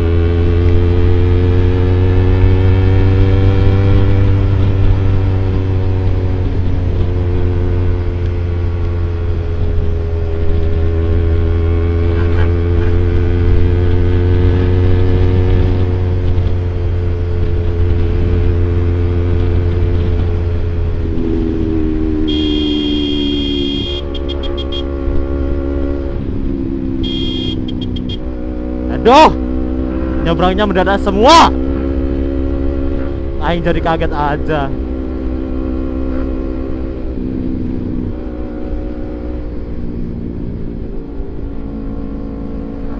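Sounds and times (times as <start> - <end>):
motorcycle engine cruising: 0.0 - 42.9
vehicle horn beeping: 22.3 - 24.9, 27.0 - 28.3.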